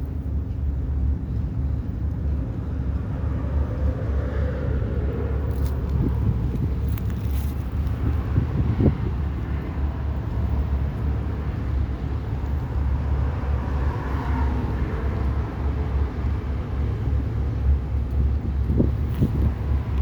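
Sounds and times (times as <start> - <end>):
wind buffeting microphone: 2.3 - 20.0.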